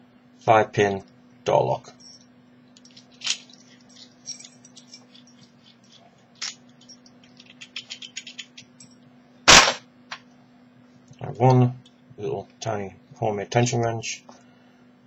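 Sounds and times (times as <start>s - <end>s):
lock-picking tools clicking: 2.8s - 9.0s.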